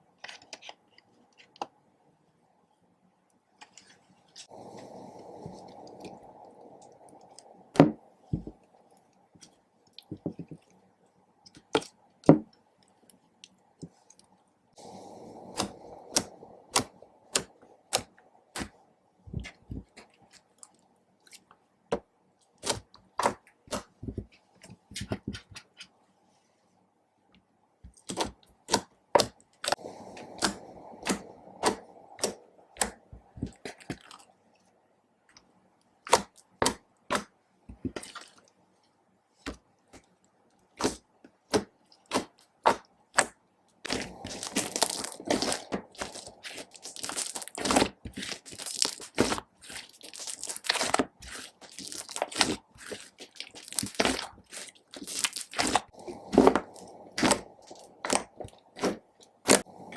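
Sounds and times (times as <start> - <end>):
slime squelching by hand: 22.5 - 25.9, 27.9 - 34.4, 35.9 - 38.6, 39.4 - 59.9.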